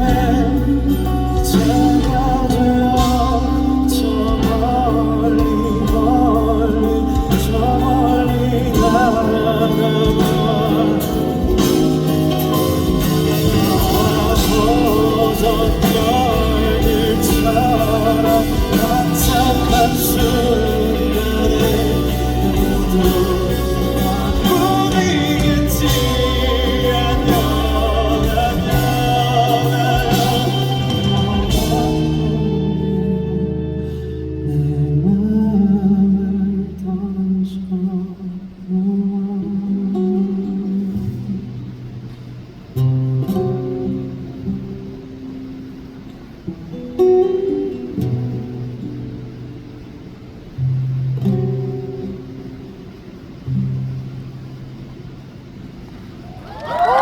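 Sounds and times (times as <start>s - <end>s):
drums: 0.0s - 37.1s, 40.9s - 57.0s
bass line: 0.0s - 37.3s
person singing: 0.0s - 41.4s
live band playing slow pop song: 0.0s - 54.0s, 56.0s - 57.0s.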